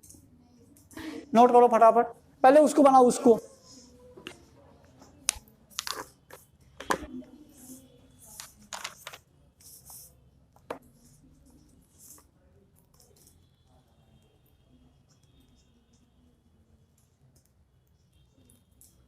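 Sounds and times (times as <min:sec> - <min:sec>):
pens clicking and tapping: 0:05.0 - 0:07.1, 0:08.3 - 0:13.4, 0:16.9 - 0:19.0.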